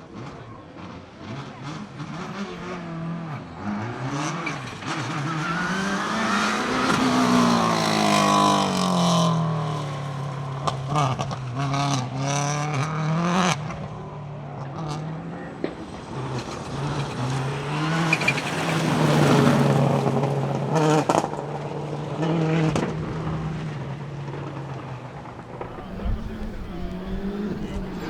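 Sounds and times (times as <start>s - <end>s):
rally car engine passing: 0.1s - 28.0s
engine bangs and pops: 25.2s - 28.0s.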